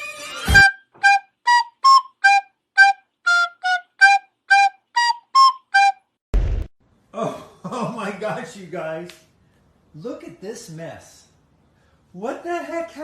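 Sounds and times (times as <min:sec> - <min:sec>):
flute-like notes: 0:00.4 - 0:06.2
thump: 0:06.4 - 0:06.7.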